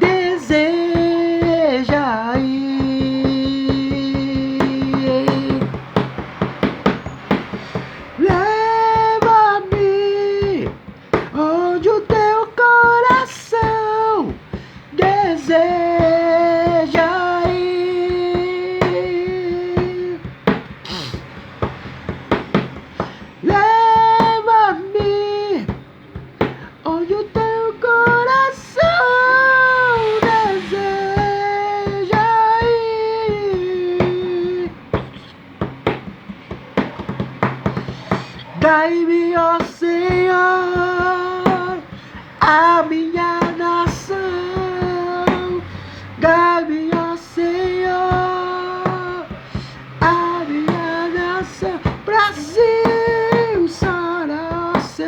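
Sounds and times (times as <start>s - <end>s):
drum hits: 0.0s - 55.0s
worship song with band: 26.6s - 35.3s.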